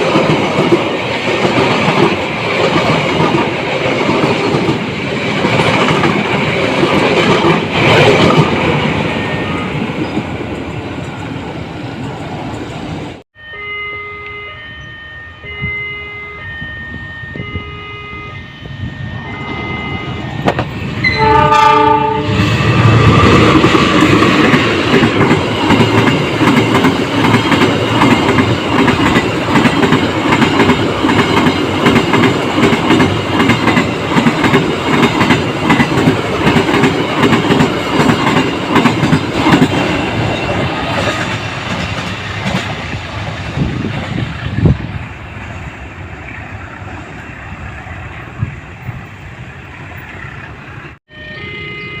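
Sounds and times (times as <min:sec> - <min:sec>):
train running noise: 0:00.0 - 0:52.0
short repeated tones: 0:13.4 - 0:21.4
locomotive horn: 0:13.4 - 0:22.6, 0:51.1 - 0:52.0.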